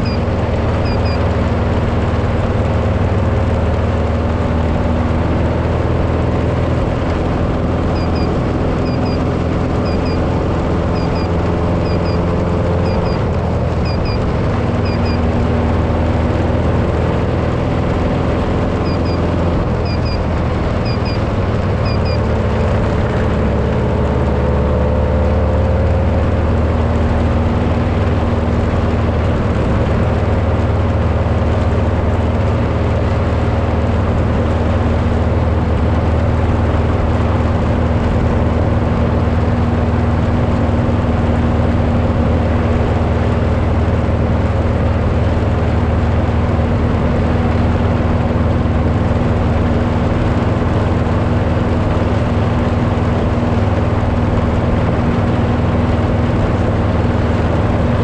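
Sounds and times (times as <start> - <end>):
faint double chirp: 0.0 - 1.2, 10.9 - 13.2
race vehicle engine running: 0.0 - 58.0
road and wind noise: 0.0 - 58.0.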